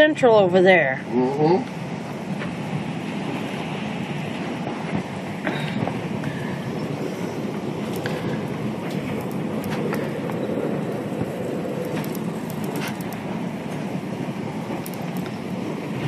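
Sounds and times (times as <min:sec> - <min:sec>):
heavy rain: 0:00.0 - 0:16.0
storm wind rushing: 0:00.0 - 0:16.0
sharp ticks: 0:07.8 - 0:10.4, 0:11.0 - 0:13.3, 0:14.6 - 0:15.5.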